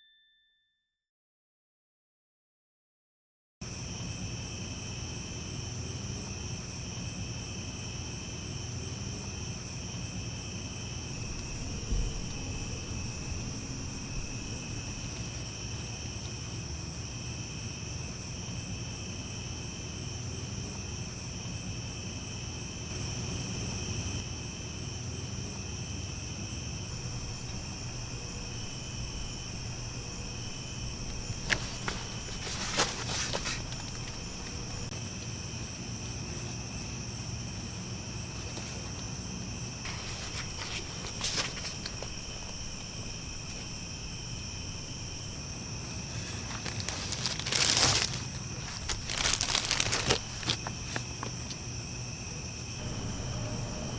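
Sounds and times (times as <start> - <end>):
insects chirping: 3.6 - 53.9
low background rumble: 10.3 - 17.8, 25.1 - 38.2, 39.5 - 50.8, 51.8 - 53.9.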